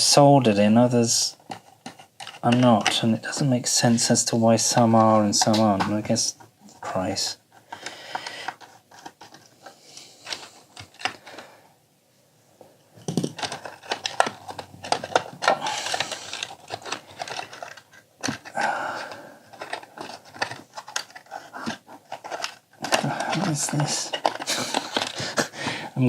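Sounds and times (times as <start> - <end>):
plastic parts clicking and scraping: 0.8 - 11.5, 13.0 - 26.0.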